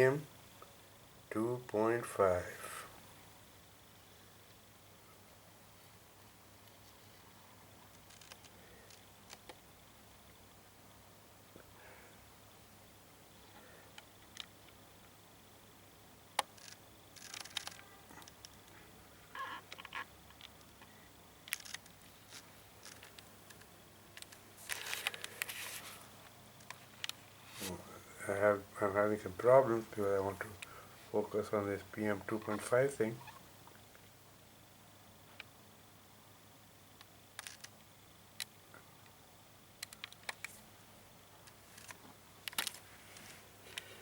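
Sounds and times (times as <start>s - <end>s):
camera handling clicks and rustles: 16.4s - 18.6s, 21.5s - 26.0s, 41.5s - 43.9s
camera scraping: 24.2s - 26.1s.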